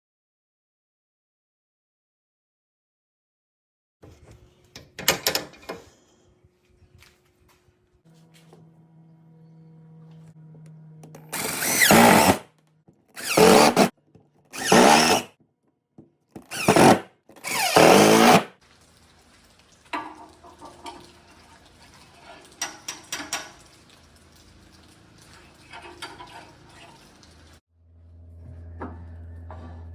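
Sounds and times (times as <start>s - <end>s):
power drill bursts: 11.3s - 12.5s, 13.2s - 13.9s, 14.5s - 15.3s, 16.4s - 18.5s.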